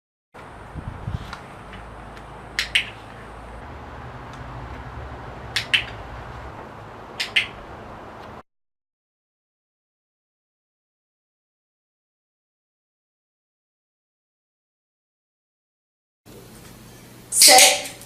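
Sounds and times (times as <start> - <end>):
sharp double clicks: 2.6 - 3.0, 5.5 - 6.0, 7.2 - 7.6.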